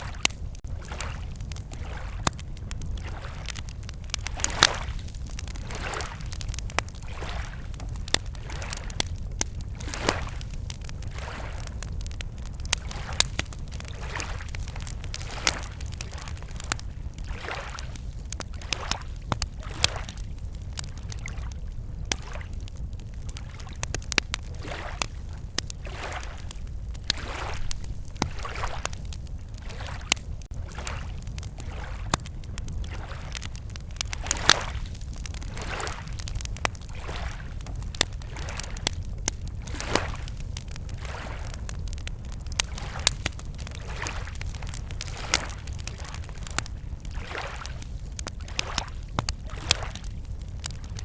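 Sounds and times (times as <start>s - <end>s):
waves lapping at shore: 0.0s - 11.7s, 12.7s - 20.3s, 23.3s - 39.0s, 39.6s - 42.0s, 42.6s - 50.0s
campfire crackling and popping: 0.0s - 51.0s.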